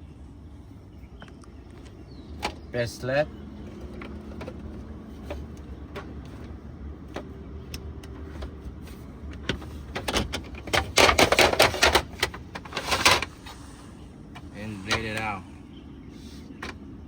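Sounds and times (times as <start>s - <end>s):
loud clattering knocks: 9.5s - 13.2s.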